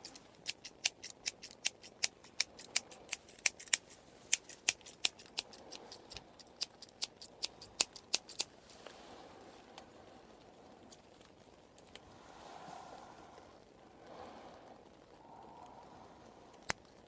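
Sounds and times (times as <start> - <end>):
scissors snipping: 0.0 - 8.5.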